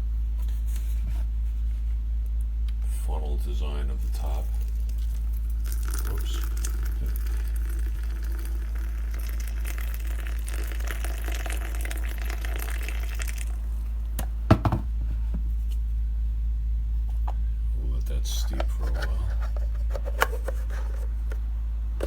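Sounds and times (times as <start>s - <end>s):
steady low hum: 0.0s - 22.0s
water poured into teapot: 4.4s - 13.6s.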